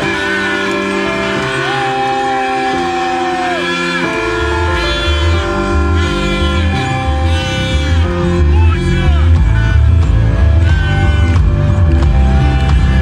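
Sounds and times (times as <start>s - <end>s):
heavy pulsing bass beat: 0.0s - 13.0s
held synth chords: 0.0s - 13.0s.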